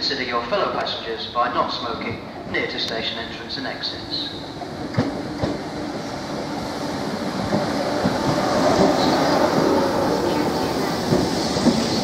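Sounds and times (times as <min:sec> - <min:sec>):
train wheels rumbling: 0:02.0 - 0:12.0
train knocks: 0:04.6 - 0:05.8, 0:07.2 - 0:12.0.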